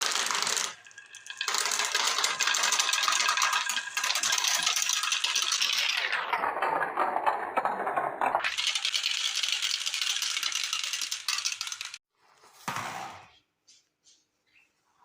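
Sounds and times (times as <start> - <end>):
marbles rolling along track: 0.0 - 12.0.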